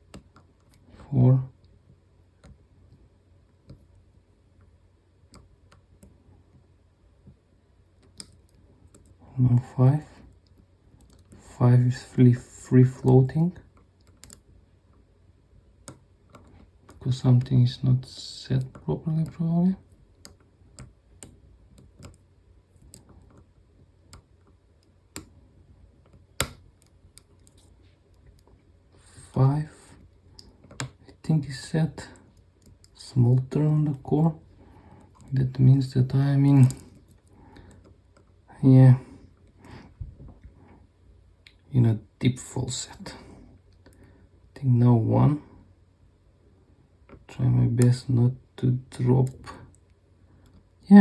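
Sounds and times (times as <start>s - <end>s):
lock pick clicking: 26.1s - 27.5s.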